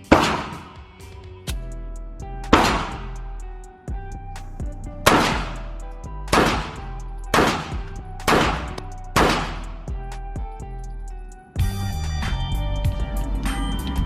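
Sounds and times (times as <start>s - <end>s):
pistol shots: 0.0s - 0.8s, 2.6s - 3.2s, 5.1s - 5.7s, 6.3s - 9.8s.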